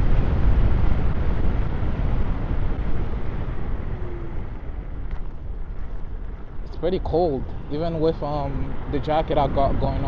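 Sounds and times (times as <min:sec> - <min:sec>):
wind rushing and buffeting: 0:00.0 - 0:10.0.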